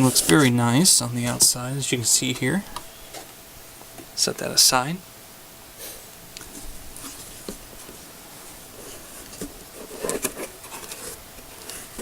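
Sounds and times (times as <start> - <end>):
cardboard scraping and rustling: 0.0 - 1.6, 6.4 - 12.0.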